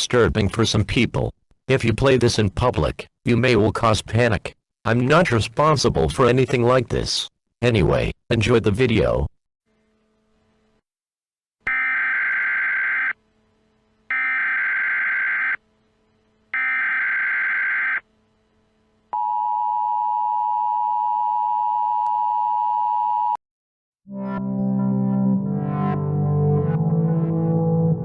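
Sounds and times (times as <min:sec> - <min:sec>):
screechy digital data tones: 0:11.7 - 0:13.2, 0:14.1 - 0:15.6, 0:16.6 - 0:18.0.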